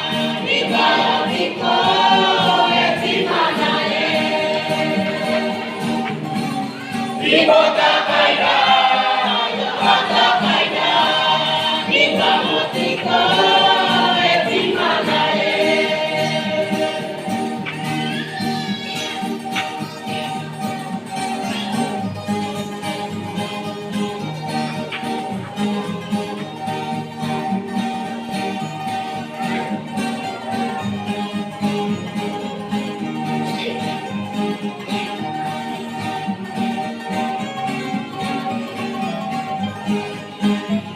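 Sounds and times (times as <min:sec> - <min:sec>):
choir singing a hymn: 0:00.0 - 0:18.0
church spiritual song: 0:00.0 - 0:40.9
plucked acoustic guitar: 0:00.0 - 0:40.9.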